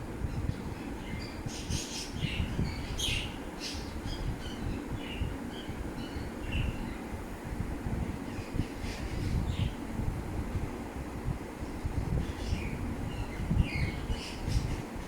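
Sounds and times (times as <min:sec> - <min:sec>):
wind rumble on microphone: 0:00.0 - 0:15.0
birds chirping and calling: 0:00.3 - 0:06.8.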